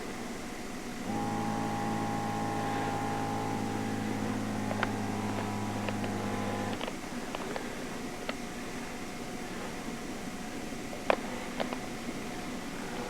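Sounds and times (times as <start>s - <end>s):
small electric motor humming: 1.0s - 7.6s.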